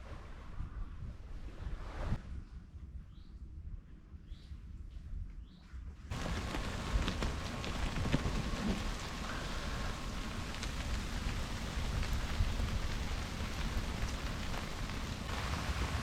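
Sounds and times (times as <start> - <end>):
raindrop impacts: 6.1 - 16.0
steady rain falling: 6.1 - 16.0.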